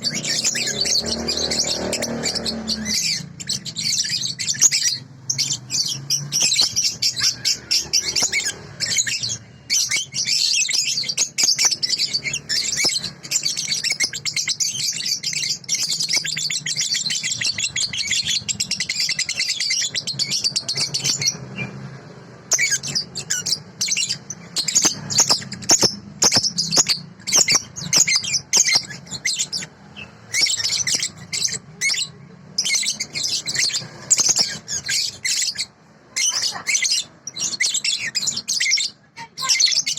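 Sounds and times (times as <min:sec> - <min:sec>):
young bird chattering song: 0:00.0 - 0:39.9.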